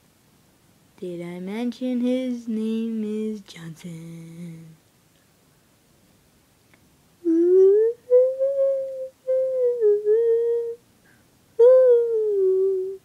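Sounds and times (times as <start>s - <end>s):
person humming a slow tune: 2.1s - 4.8s, 7.2s - 10.8s, 11.6s - 13.0s.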